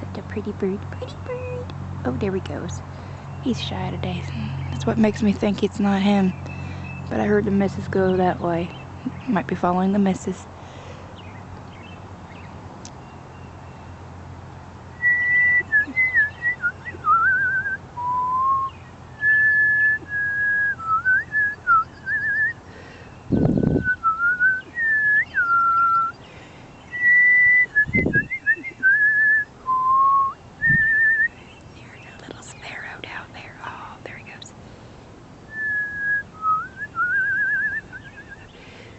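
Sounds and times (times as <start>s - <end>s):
person whistling bird-like calls: 15.0s - 22.6s, 23.4s - 26.2s, 26.9s - 31.4s, 35.5s - 38.5s.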